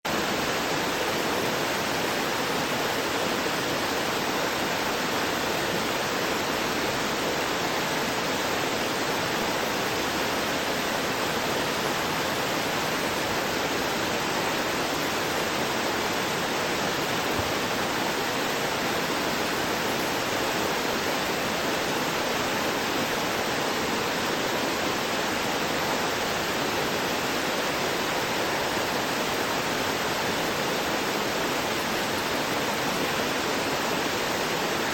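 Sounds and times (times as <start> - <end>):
stream gurgling over rocks: 0.1 - 34.9.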